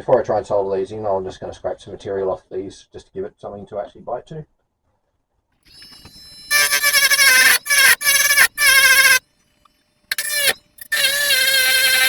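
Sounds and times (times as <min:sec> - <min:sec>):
high-pitched scraping squeal: 0:05.7 - 0:09.2, 0:10.1 - 0:12.0.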